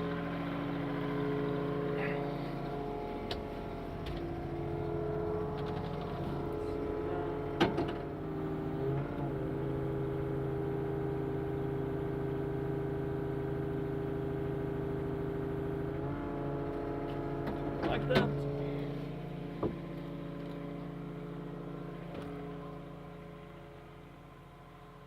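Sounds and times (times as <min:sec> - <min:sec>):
excavator diesel engine running: 0:00.0 - 0:11.1.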